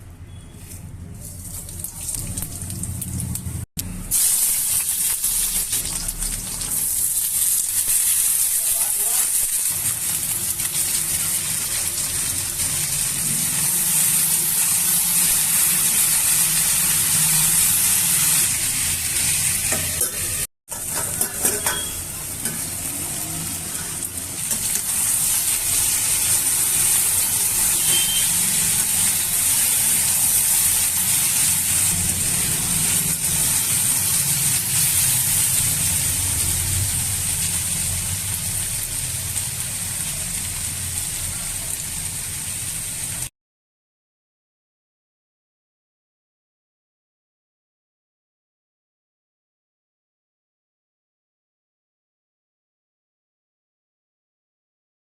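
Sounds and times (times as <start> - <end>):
vegetables sizzling in oil: 1.4 - 43.3.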